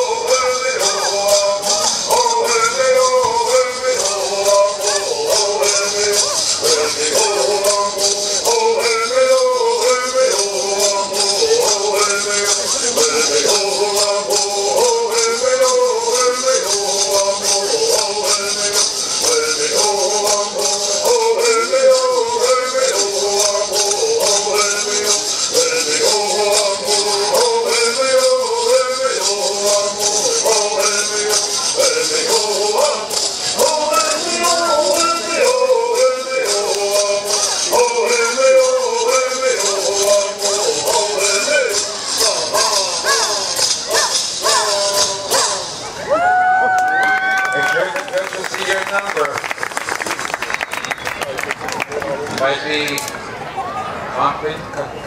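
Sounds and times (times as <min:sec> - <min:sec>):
people chanting a song: 0:00.0 - 0:45.8.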